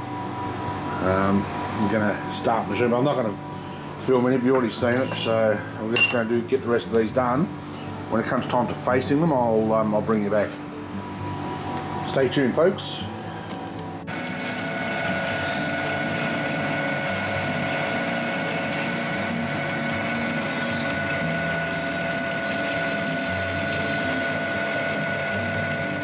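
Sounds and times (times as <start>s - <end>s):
metal lathe running: 4.0s - 6.5s, 14.0s - 26.0s
gear whine: 14.0s - 26.0s.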